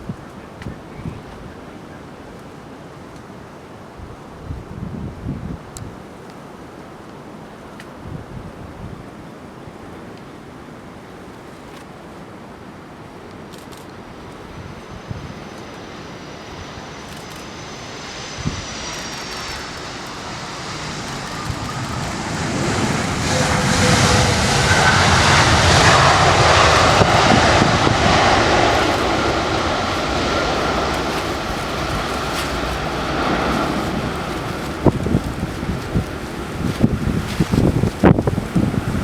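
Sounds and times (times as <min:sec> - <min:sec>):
jet airliner passing by: 0:13.4 - 0:39.0
thin engine whine: 0:14.4 - 0:39.0.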